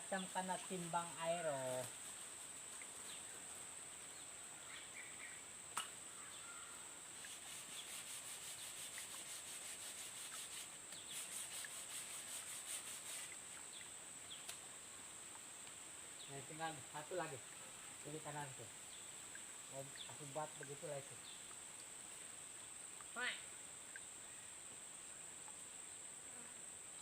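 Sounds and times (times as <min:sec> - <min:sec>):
rhythmic scraping on wood: 0:07.2 - 0:13.4.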